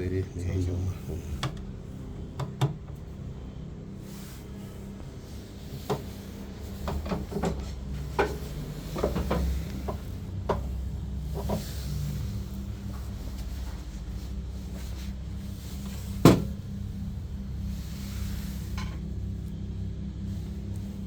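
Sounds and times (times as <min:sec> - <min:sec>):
steady low hum: 0:00.0 - 0:21.0
knocks and clicks of handling: 0:02.3 - 0:03.0, 0:06.8 - 0:10.8.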